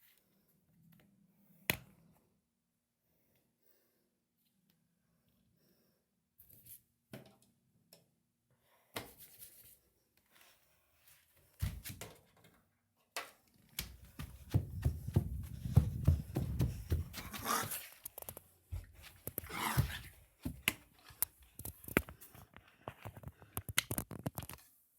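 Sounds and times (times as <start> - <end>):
rumbling and rustling: 14.0 - 17.5.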